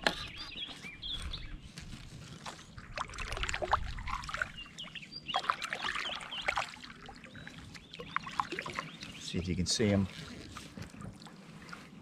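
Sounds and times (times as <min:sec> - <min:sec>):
kayak paddle strokes through water: 0:00.0 - 0:12.0
water splashing and dripping: 0:02.4 - 0:11.9.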